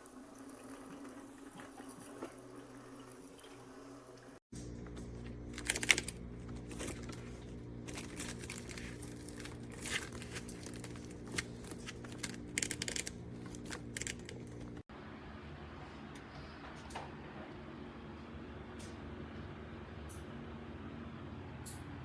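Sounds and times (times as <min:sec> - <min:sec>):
coffee maker sputtering: 0:00.0 - 0:14.8
coffee maker hum: 0:00.0 - 0:18.6.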